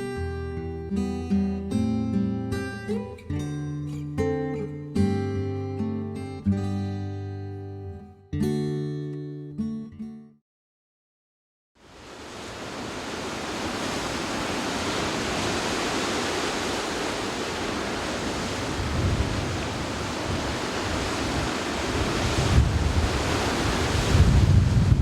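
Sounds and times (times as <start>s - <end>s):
rushing wind: 12.0s - 25.0s
wind buffeting microphone: 12.7s - 25.0s.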